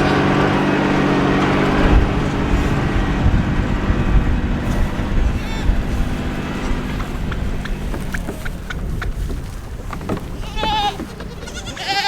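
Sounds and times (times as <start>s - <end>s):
tractor engine humming: 0.0s - 12.0s
light knocks: 6.7s - 11.5s
goat bleating: 10.2s - 12.0s.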